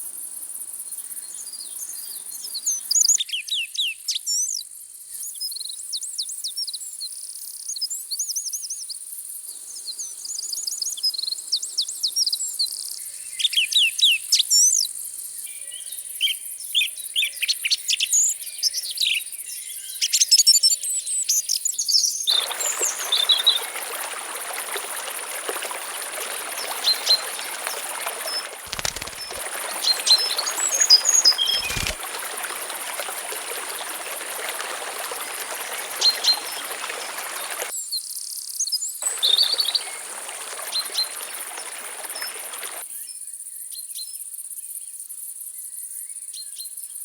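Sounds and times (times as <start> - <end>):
flowing river water: 22.3 - 37.7, 39.0 - 42.8
small birds chirping: 22.3 - 37.7, 39.0 - 42.8.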